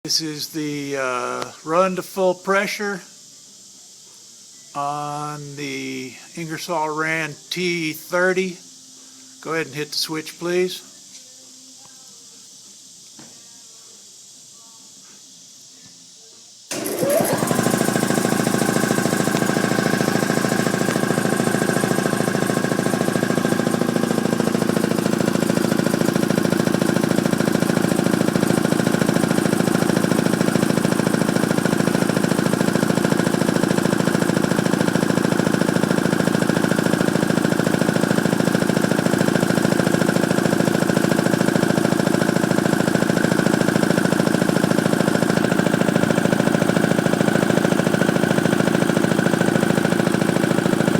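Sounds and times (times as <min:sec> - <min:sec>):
air compressor pumping: 0:16.7 - 0:50.9.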